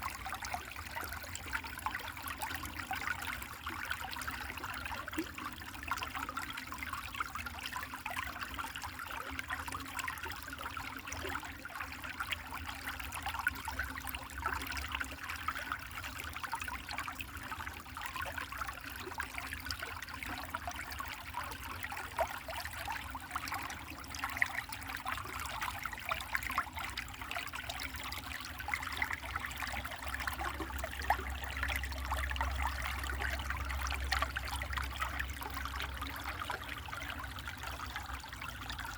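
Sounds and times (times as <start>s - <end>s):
stream babbling: 27.9s - 38.9s.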